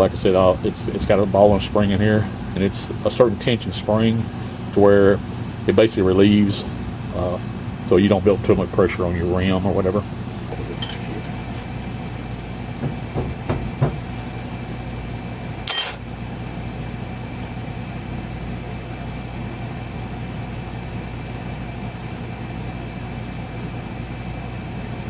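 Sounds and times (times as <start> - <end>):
low mechanical hum: 0.0 - 25.0
metallic clank with ring: 15.7 - 16.0.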